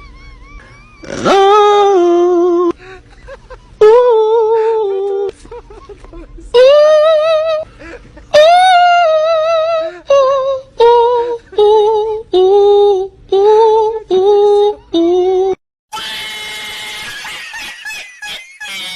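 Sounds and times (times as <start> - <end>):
high singing voice with vibrato: 0.0 - 2.8, 3.8 - 5.3, 6.5 - 15.6.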